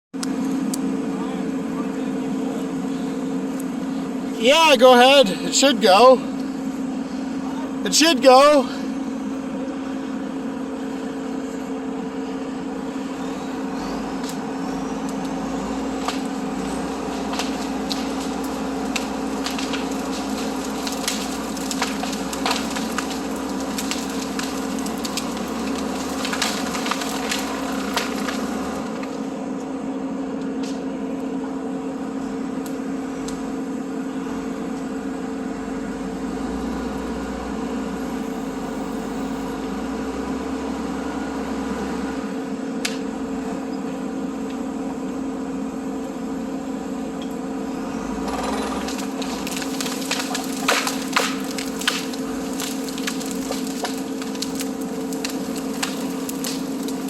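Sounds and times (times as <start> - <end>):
diesel engine running under load: 0.2 - 57.0
wood cracking and snapping: 15.0 - 29.2, 48.7 - 57.0.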